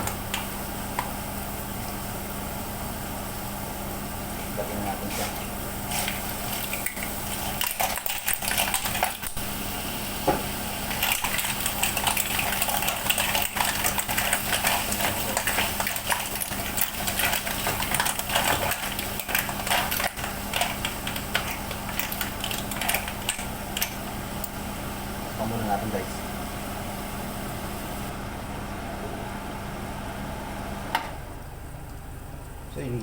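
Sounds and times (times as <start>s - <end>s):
clam shells clattering in a pot: 11.0s - 24.0s.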